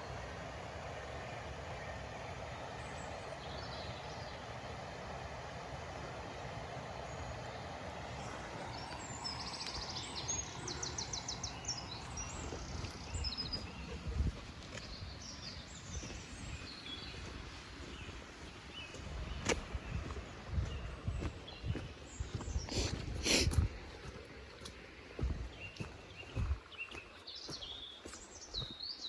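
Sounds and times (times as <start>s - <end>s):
small birds chirping: 7.1s - 29.0s
wind rumble: 8.0s - 24.0s.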